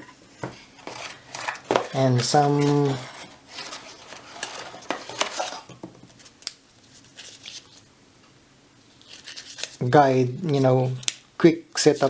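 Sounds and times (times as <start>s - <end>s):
packaging rustling: 0.3s - 7.9s, 9.0s - 9.9s.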